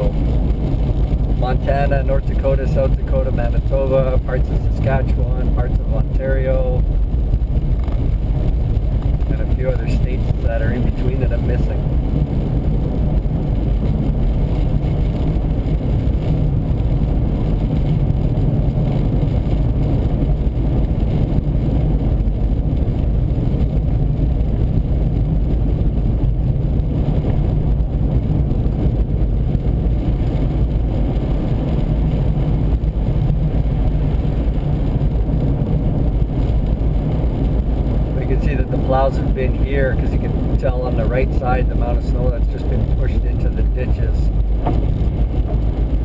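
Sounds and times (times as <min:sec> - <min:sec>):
vehicle driving at highway speed: 0:00.0 - 0:46.0.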